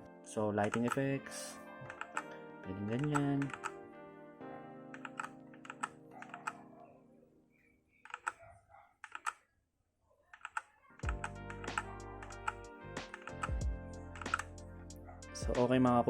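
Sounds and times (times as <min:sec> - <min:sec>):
background music: 0:00.0 - 0:07.8, 0:11.0 - 0:16.0
mechanical keyboard key presses: 0:00.6 - 0:01.0, 0:03.0 - 0:03.7, 0:05.0 - 0:06.6, 0:08.1 - 0:08.4, 0:09.0 - 0:09.4, 0:10.4 - 0:13.6, 0:14.2 - 0:14.5.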